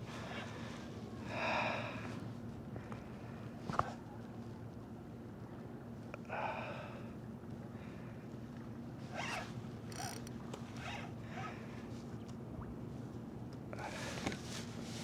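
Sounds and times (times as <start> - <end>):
fishing reel rasping: 9.2 - 10.4.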